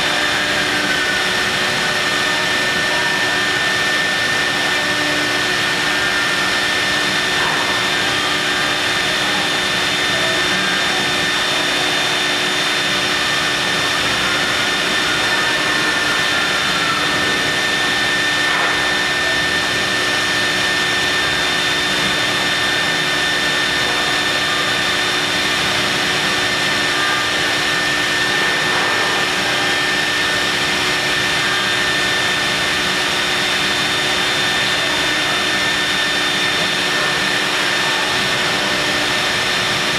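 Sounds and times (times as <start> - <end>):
milling machine spindle whine: 0.0 - 39.9.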